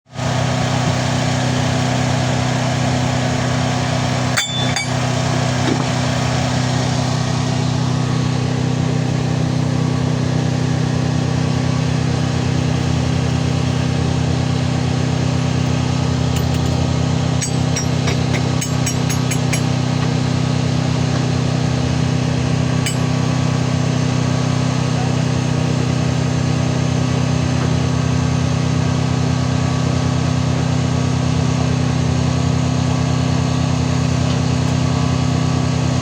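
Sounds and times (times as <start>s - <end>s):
machine engine humming: 0.2s - 36.0s
sharp metallic clinks: 4.4s - 5.1s, 16.3s - 20.0s, 22.8s - 23.3s.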